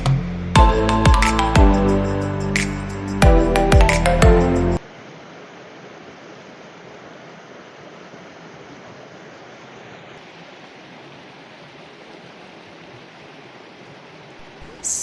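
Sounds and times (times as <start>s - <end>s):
background music: 0.0s - 4.8s
river water rushing: 4.8s - 15.0s.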